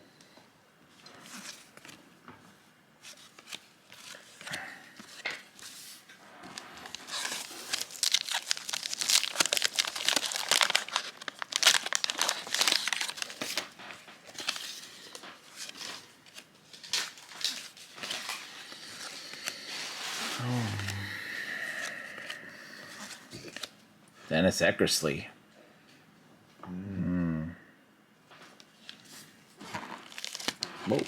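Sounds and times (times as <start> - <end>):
card packaging crinkling: 3.1 - 20.2, 22.2 - 23.8, 28.8 - 31.0.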